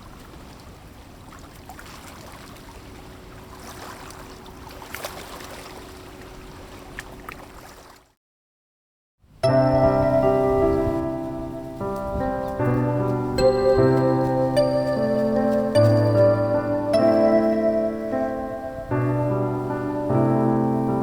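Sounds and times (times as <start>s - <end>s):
water lapping and gurgling: 0.0s - 8.2s
piano music: 9.4s - 21.0s.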